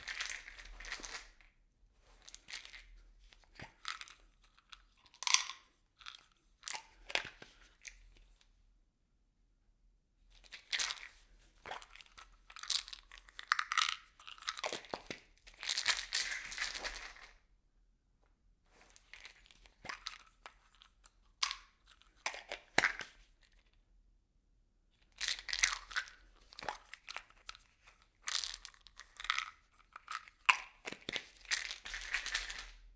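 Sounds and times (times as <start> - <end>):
objects rattling in plastic bottle: 28.3 - 32.9.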